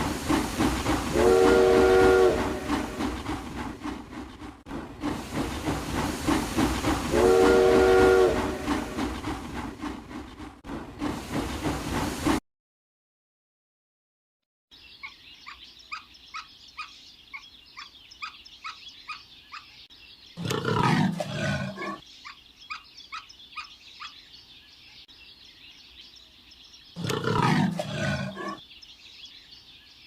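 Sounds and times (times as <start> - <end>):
steam train chugging and hissing: 0.0 - 12.4
multi-tone train whistle: 1.1 - 3.0, 7.1 - 9.0.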